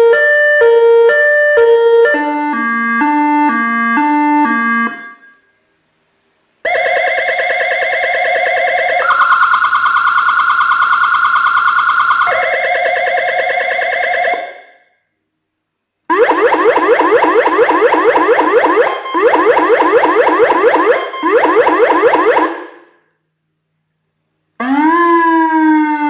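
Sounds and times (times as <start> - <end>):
electronic siren cycling tones: 6.7 - 14.6, 16.1 - 22.9.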